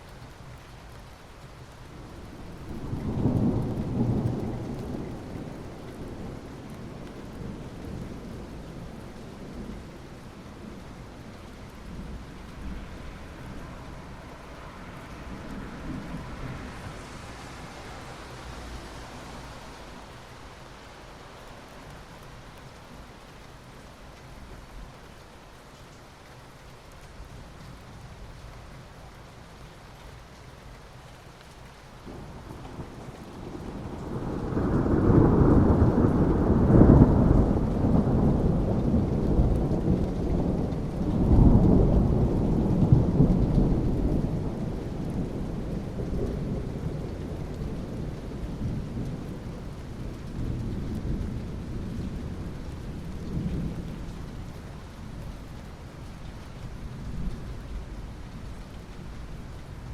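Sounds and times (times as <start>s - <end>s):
steady rain: 0.0s - 59.9s
deep rumble of thunder: 2.1s - 18.7s, 32.1s - 55.4s.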